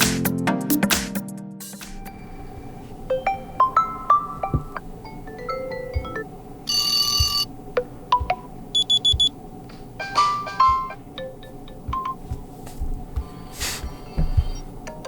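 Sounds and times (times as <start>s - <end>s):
electronic alarm melody: 2.1s - 7.5s, 8.2s - 9.3s, 10.1s - 12.4s.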